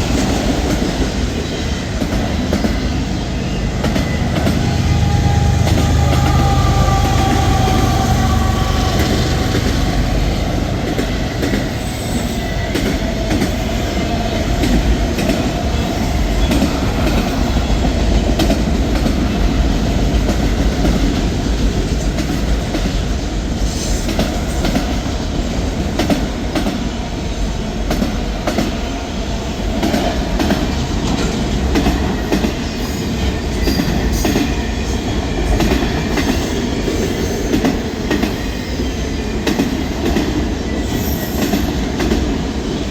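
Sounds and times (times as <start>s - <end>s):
train wheels clicking over rail joints: 29.6s - 42.8s.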